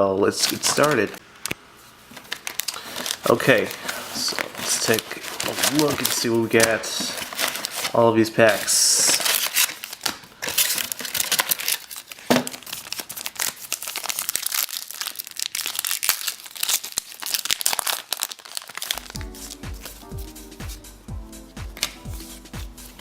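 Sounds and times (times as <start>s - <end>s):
card pack wrappers crinkling: 0.2s - 20.9s, 21.7s - 23.0s
music: 19.0s - 23.0s.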